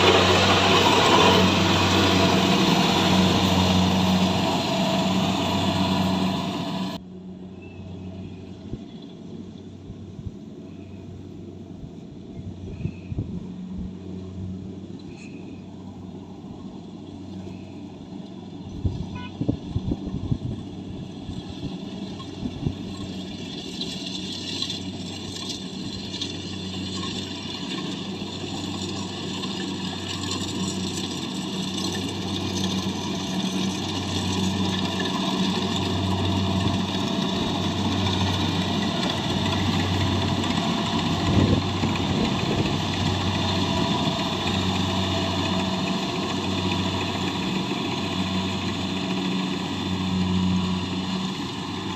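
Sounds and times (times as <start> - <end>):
harvester engine throbbing hum: 0.0 - 51.9.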